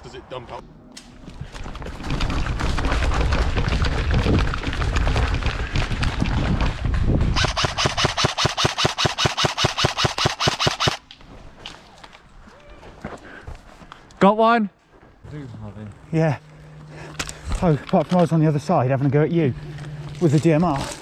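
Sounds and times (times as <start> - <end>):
airsoft gun firing rapidly: 7.4 - 11.0
heavy rumbling noise: 15.3 - 21.0.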